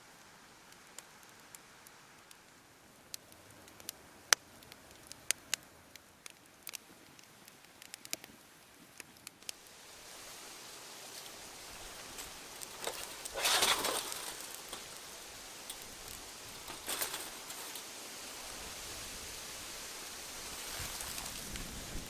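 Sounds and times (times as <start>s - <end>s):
campfire crackling: 0.0s - 22.0s
sharp fire snaps: 0.1s - 22.0s
fire hissing and rushing: 6.3s - 22.0s.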